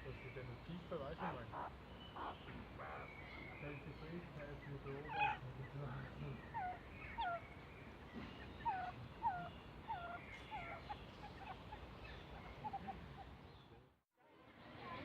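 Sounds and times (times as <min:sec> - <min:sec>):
animal chirping: 0:01.2 - 0:03.6, 0:04.9 - 0:05.4, 0:06.4 - 0:07.5, 0:08.5 - 0:13.7.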